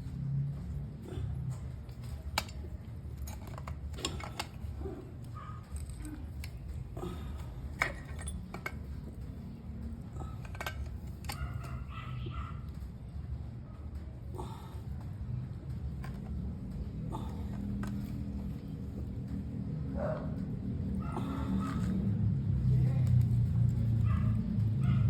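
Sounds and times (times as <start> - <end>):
metallic clinks of hand tools: 7.8 - 9.1.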